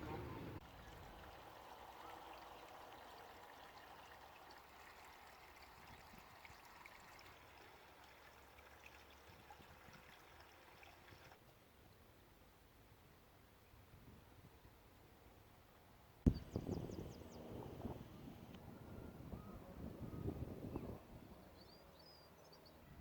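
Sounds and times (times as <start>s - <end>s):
faint trickling water: 0.0s - 11.6s.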